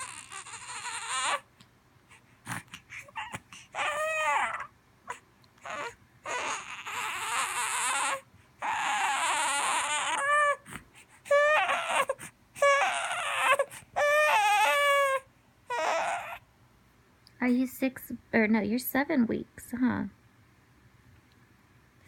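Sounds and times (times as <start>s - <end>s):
infant crying: 0.0s - 1.5s, 2.5s - 16.4s.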